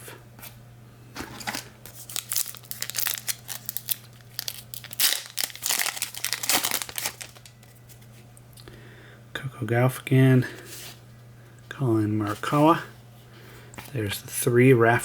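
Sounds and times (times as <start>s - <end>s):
foil wrapper crinkling and tearing: 1.6s - 7.7s.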